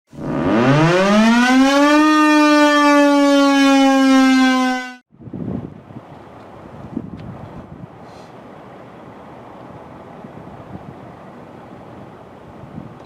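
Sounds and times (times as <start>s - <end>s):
warning siren wailing: 0.2s - 5.0s
wind noise: 5.1s - 8.2s, 9.1s - 13.0s.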